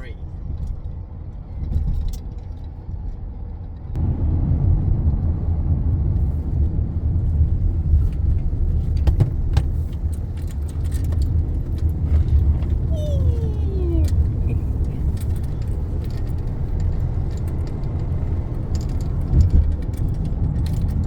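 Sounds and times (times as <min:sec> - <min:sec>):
car engine and tyre rumble: 0:00.0 - 0:21.0.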